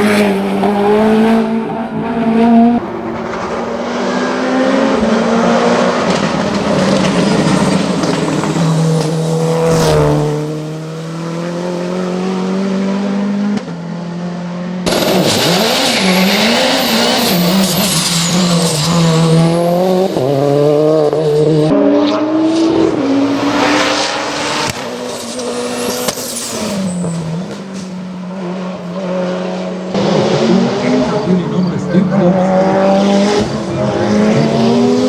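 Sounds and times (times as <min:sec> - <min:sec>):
race car engine revving: 0:00.0 - 0:35.0
high whistling squeals: 0:15.3 - 0:19.8, 0:25.1 - 0:27.4.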